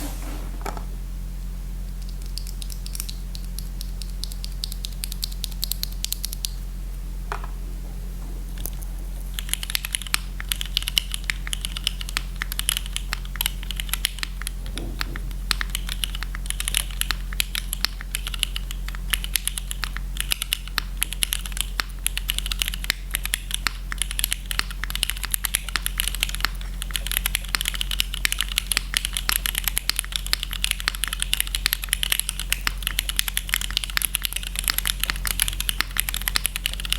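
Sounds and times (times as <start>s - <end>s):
steady low hum: 0.0s - 36.9s
mechanical keyboard typing: 2.0s - 6.6s, 8.6s - 36.9s.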